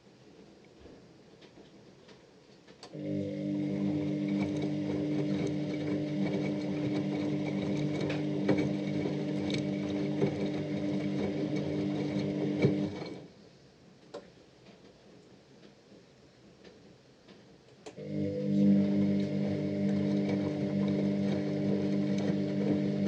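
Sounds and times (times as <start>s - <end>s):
washing machine motor humming: 2.9s - 13.3s, 17.9s - 23.0s.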